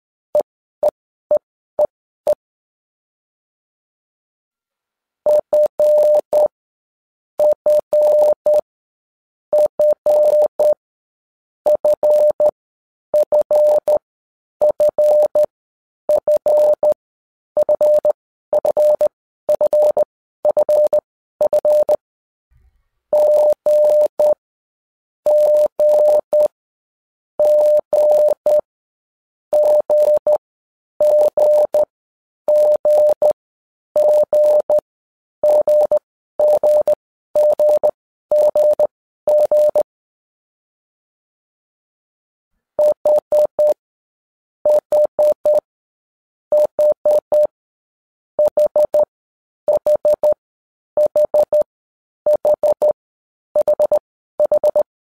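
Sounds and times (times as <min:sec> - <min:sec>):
morse code beeps: 0:05.3 - 0:06.5, 0:07.4 - 0:08.6, 0:09.6 - 0:10.8, 0:11.7 - 0:12.5, 0:13.2 - 0:14.0, 0:14.6 - 0:15.5, 0:16.2 - 0:17.0, 0:17.6 - 0:22.0, 0:23.2 - 0:24.4, 0:25.3 - 0:26.6, 0:27.4 - 0:28.7, 0:29.5 - 0:30.4, 0:31.0 - 0:31.9, 0:32.5 - 0:33.4, 0:34.0 - 0:34.8, 0:35.4 - 0:39.9, 0:42.8 - 0:43.8, 0:44.7 - 0:45.7, 0:46.5 - 0:47.6, 0:48.4 - 0:49.1, 0:49.7 - 0:50.4, 0:51.0 - 0:51.7, 0:52.3 - 0:53.0, 0:53.6 - 0:54.9.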